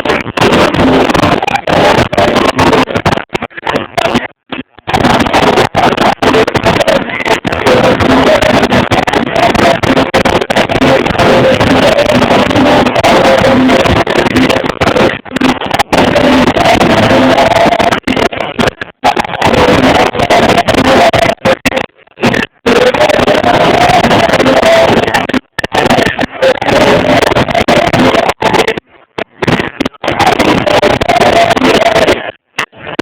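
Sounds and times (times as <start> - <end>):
loud distorted music: 0.0 - 33.0.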